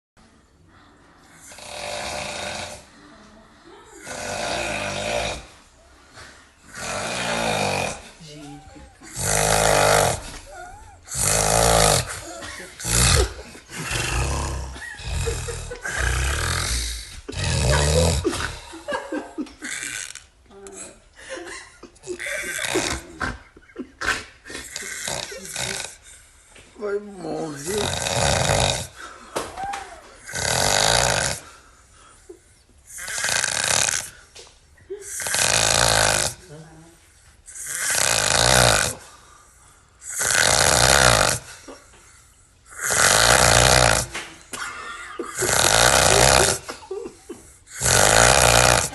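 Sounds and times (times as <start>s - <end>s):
man snoring: 1.4s - 2.9s, 4.0s - 5.6s, 6.7s - 19.0s, 22.1s - 23.2s, 24.5s - 26.1s, 27.2s - 29.1s, 30.2s - 31.6s, 32.9s - 34.2s, 35.1s - 36.5s, 37.5s - 39.2s, 40.0s - 41.7s, 42.7s - 44.3s, 45.2s - 48.9s.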